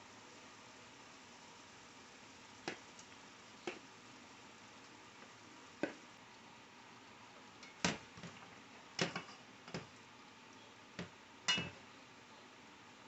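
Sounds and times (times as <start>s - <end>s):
utensil knocking against a pot: 7.6s - 8.4s.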